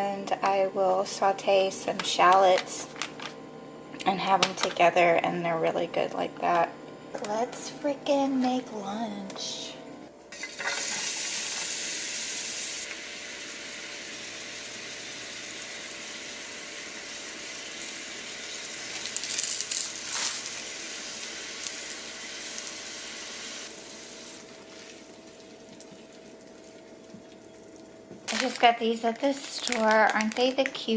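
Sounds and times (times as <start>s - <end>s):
food sizzling in a frying pan: 10.3s - 25.0s.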